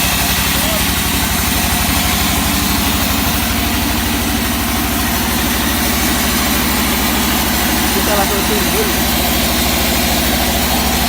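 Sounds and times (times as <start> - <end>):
engine running with hiss: 0.0 - 11.0.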